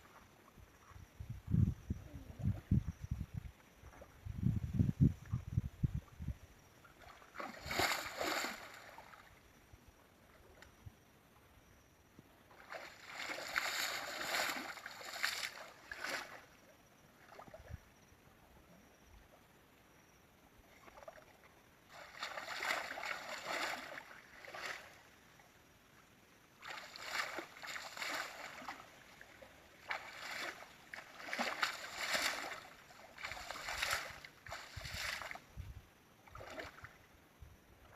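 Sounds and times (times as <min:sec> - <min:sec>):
water splashing and sloshing: 0:06.9 - 0:09.4, 0:12.5 - 0:16.6, 0:17.2 - 0:17.8, 0:20.8 - 0:25.4, 0:26.6 - 0:35.6, 0:36.2 - 0:37.2.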